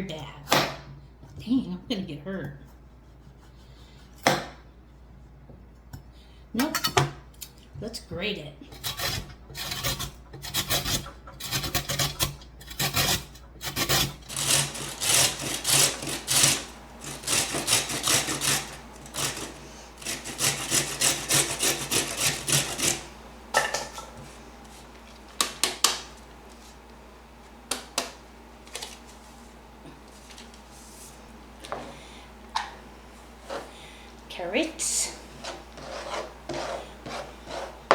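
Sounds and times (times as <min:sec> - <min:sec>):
carrot grated on a grater: 0:08.7 - 0:24.2, 0:35.3 - 0:37.9.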